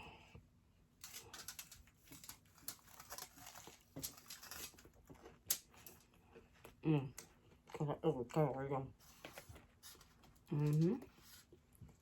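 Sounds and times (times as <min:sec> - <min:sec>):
chewing and eating noises: 0:02.0 - 0:08.8.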